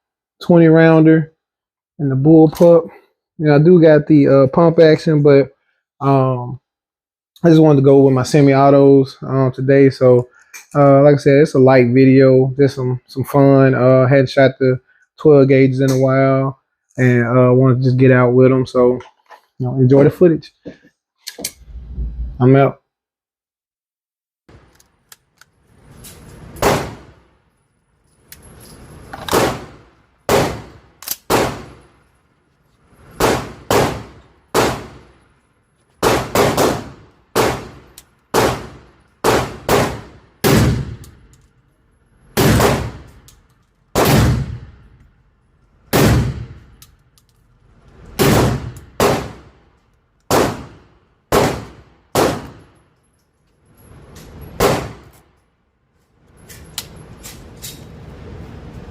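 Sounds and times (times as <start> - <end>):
shotgun firing: 26.6 - 27.2, 29.3 - 31.8, 33.2 - 35.1, 36.0 - 41.0, 42.4 - 43.1, 44.0 - 44.7, 45.9 - 46.6, 48.2 - 49.5, 50.3 - 52.6, 54.6 - 55.1.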